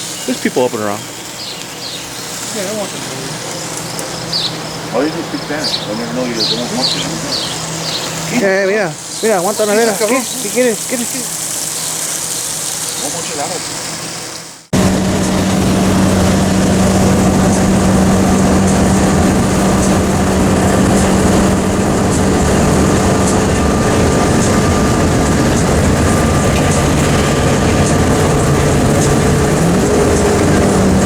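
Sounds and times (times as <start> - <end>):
vehicle engine drone: 0.0 - 12.0, 14.6 - 31.0
road and wind noise: 14.7 - 31.0.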